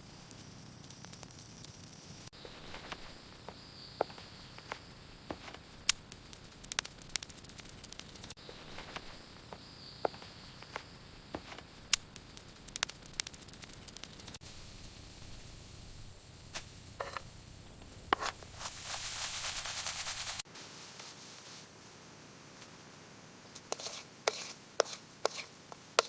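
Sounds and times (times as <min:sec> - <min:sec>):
fat popping and crackling: 0:00.0 - 0:14.4
egg sizzling in oil: 0:11.9 - 0:20.5.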